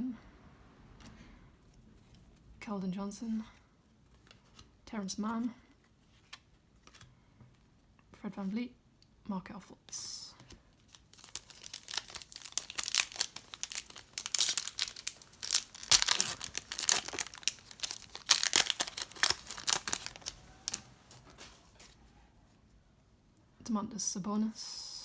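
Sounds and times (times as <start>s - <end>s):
plastic wrapper crinkling: 10.8s - 21.9s.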